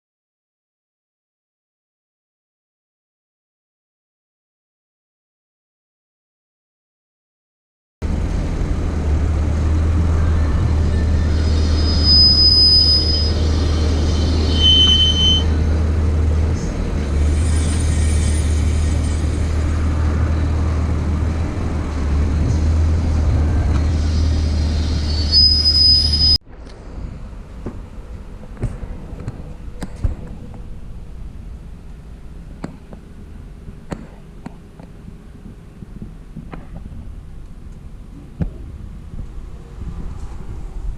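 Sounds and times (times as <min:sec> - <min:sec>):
car driving drone: 0:08.0 - 0:40.9
suspension squeals: 0:09.9 - 0:20.8, 0:22.4 - 0:26.4.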